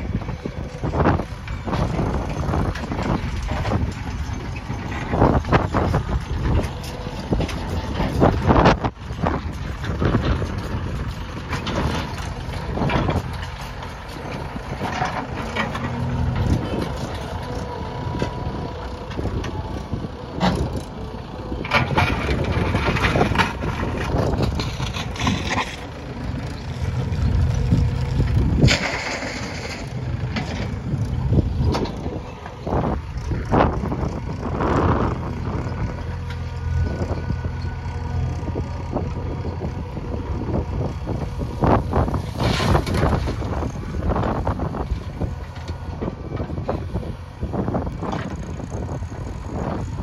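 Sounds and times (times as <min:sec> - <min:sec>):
diesel engine running: 0:00.0 - 0:50.0
knocks and clanks: 0:27.6 - 0:32.6.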